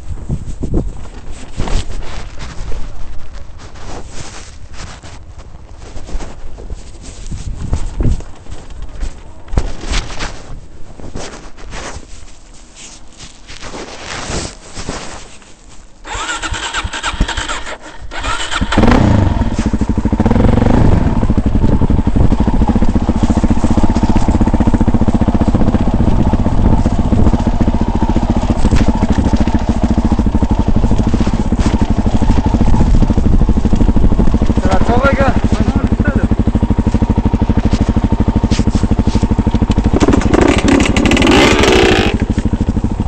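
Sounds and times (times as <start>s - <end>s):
starter motor whirring: 16.1s - 19.4s, 39.3s - 42.5s
vehicle engine running: 16.1s - 43.0s.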